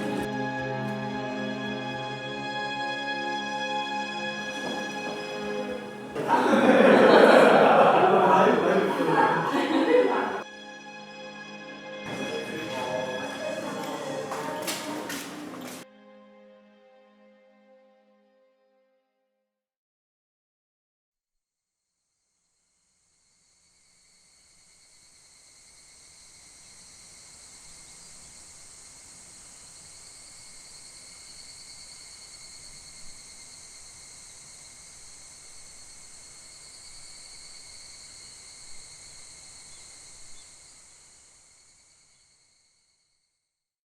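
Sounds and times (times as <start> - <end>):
insects chirring: 22.2 - 43.4.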